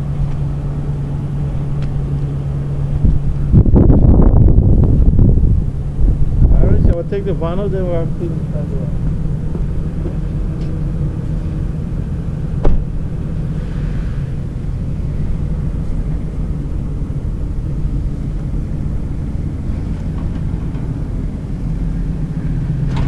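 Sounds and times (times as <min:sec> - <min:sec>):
van engine humming: 0:00.0 - 0:23.0
sharp thump: 0:12.6 - 0:13.0.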